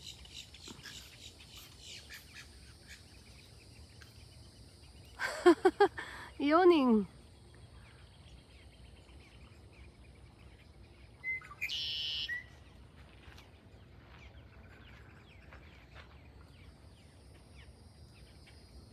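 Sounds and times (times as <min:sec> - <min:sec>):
birds chirping faintly: 0:00.0 - 0:18.9
low background noise: 0:00.0 - 0:18.9
high bird call: 0:11.2 - 0:12.6.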